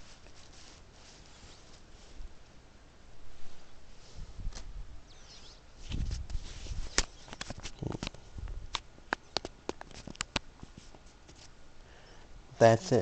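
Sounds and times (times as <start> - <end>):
sharp handling clicks and taps: 7.3 - 10.5.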